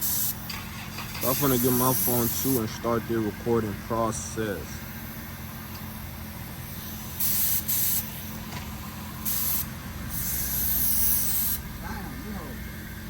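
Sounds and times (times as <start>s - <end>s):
paint spray gun hissing: 0.0s - 0.5s, 1.2s - 2.7s, 6.7s - 8.3s, 9.2s - 11.6s.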